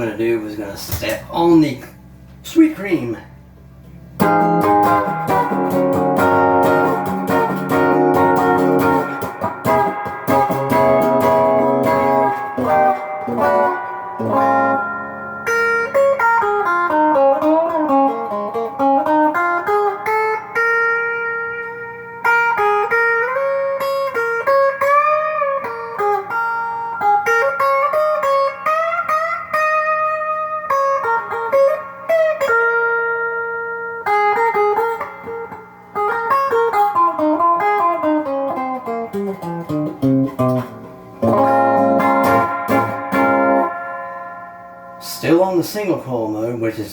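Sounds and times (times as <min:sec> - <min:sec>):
overdriven electric guitar lead: 0:04.2 - 0:45.6.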